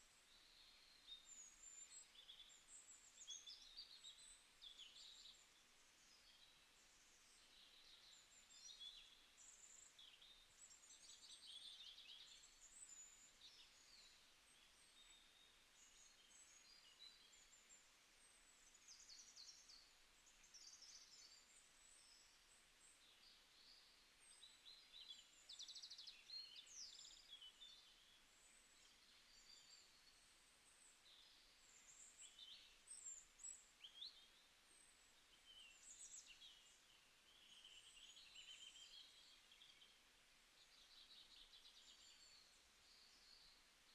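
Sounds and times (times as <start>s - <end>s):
low steady hiss: 0.0s - 43.9s.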